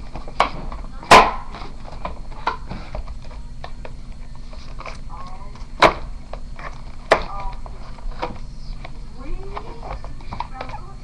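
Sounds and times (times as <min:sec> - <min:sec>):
low steady hum: 0:00.0 - 0:11.0.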